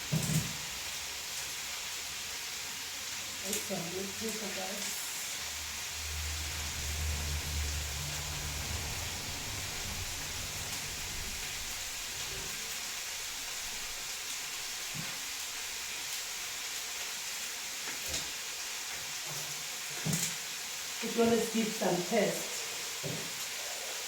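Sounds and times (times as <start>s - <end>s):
food sizzling in a pot: 0.0s - 24.0s
low hum: 5.1s - 12.7s.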